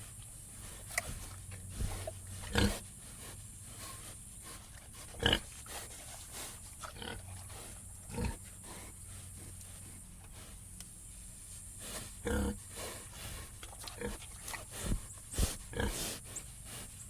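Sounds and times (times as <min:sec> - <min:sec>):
pig grunting: 0:00.7 - 0:02.9, 0:05.0 - 0:09.0, 0:11.9 - 0:16.4.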